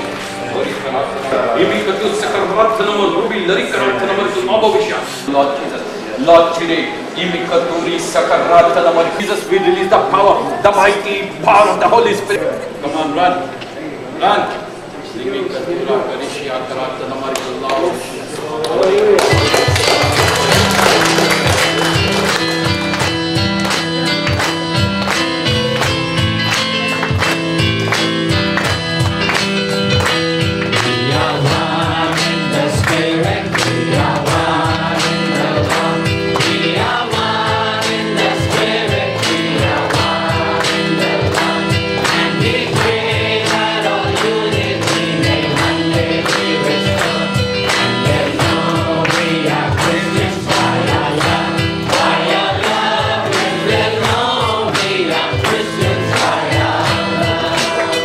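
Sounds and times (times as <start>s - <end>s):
held keyboard notes: 18.6s - 58.0s
steady percussion beat: 19.2s - 58.0s
choir singing: 30.7s - 58.0s.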